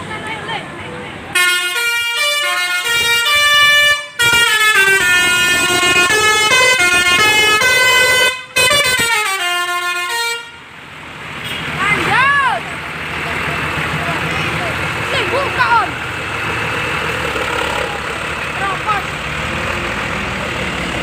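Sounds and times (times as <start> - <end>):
musical bus air horn: 1.4 - 10.7.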